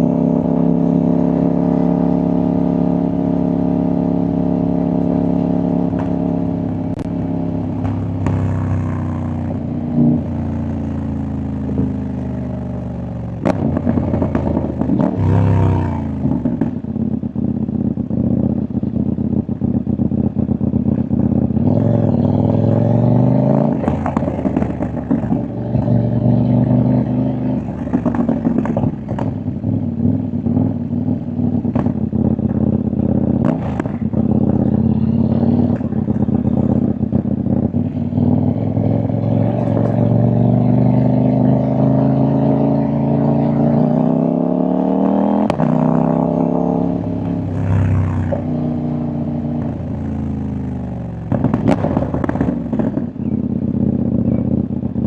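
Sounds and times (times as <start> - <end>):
motorcycle engine revving: 0.0 - 55.0
exhaust pops and crackles: 7.8 - 8.5, 13.4 - 15.1, 23.8 - 25.5, 27.6 - 29.5, 31.6 - 34.7, 45.4 - 45.7, 51.2 - 53.4.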